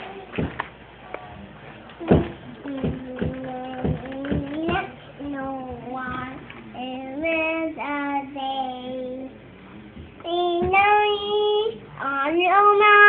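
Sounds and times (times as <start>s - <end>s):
young child singing: 2.0s - 9.4s, 10.2s - 13.0s.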